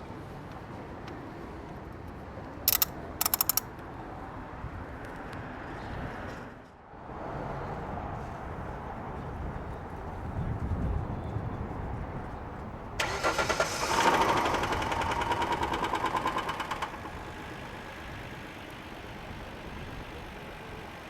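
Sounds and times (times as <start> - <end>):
sharp metallic clicks: 2.7 - 3.7.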